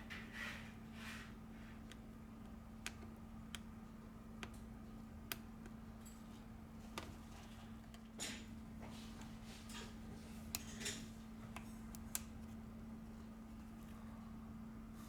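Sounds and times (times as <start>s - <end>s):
steady low hum: 0.0s - 15.0s
light clicks of small tools: 9.1s - 12.6s.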